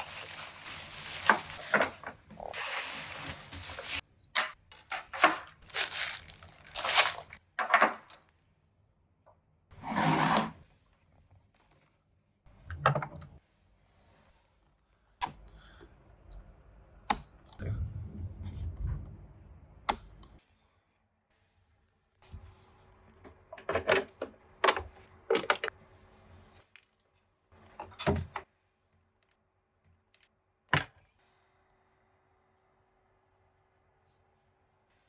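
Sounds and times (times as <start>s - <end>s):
rustling or tearing: 0.0s - 4.0s, 4.9s - 7.4s
low rumble: 17.6s - 20.4s.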